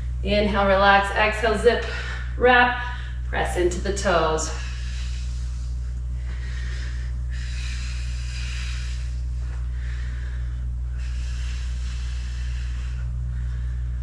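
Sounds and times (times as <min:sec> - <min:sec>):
steady low hum: 0:00.0 - 0:14.0
person breathing hard: 0:04.4 - 0:14.0.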